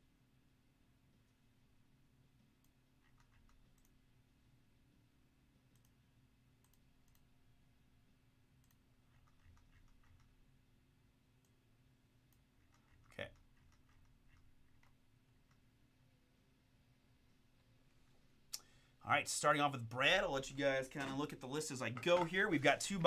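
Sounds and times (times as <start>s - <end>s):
computer mouse clicks: 2.6s - 4.0s, 5.7s - 6.0s, 6.6s - 7.3s, 8.6s - 10.4s, 12.3s - 15.7s.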